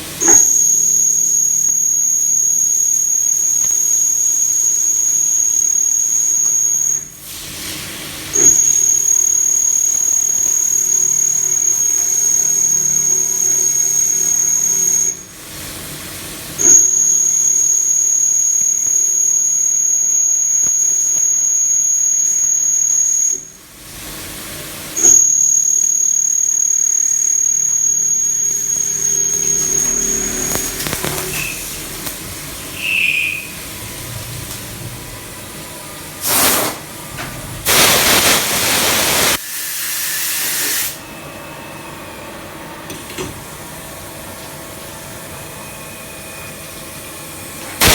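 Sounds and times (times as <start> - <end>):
milling machine squealing whine: 0.0 - 7.2, 8.3 - 15.6, 25.0 - 34.3.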